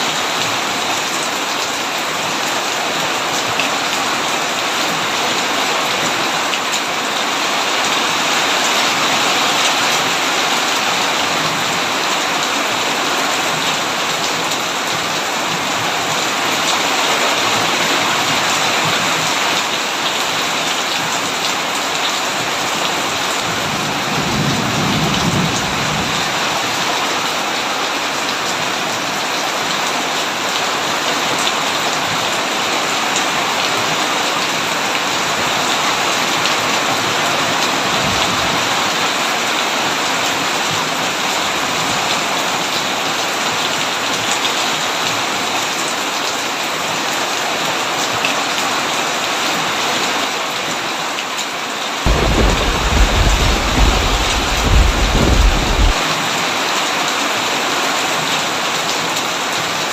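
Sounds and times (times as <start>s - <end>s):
heavy rain on a tin roof: 0.0s - 59.9s
thunder rumbling: 52.1s - 56.0s.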